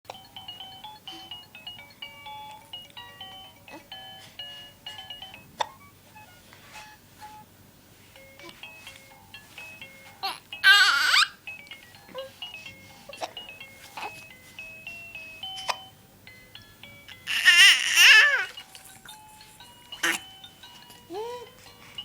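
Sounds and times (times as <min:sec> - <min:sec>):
baby hiccups: 0:05.6 - 0:05.8
baby squealing: 0:10.2 - 0:11.4, 0:17.3 - 0:18.5.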